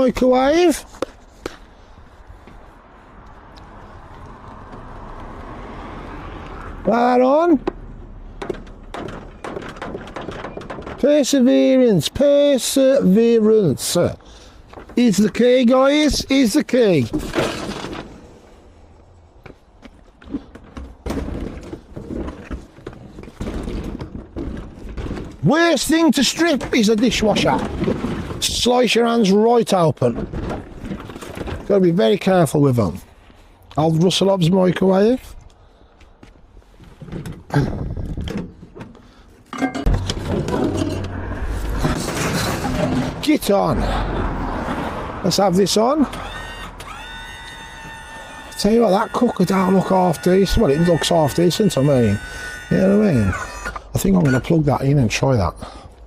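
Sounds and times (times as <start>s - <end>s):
knocks and thuds of appliances: 8.4s - 11.1s, 39.6s - 41.1s
scrap metal and glass rattling: 39.5s - 43.3s
low rumble: 39.9s - 45.1s.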